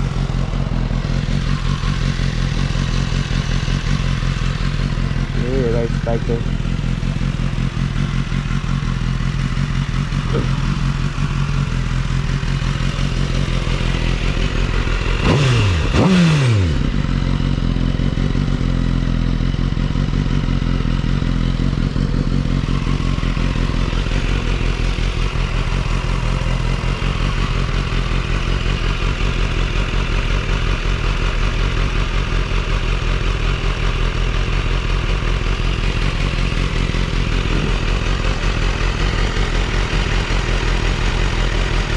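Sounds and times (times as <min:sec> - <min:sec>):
motorcycle engine idling and revving: 0:00.0 - 0:41.9.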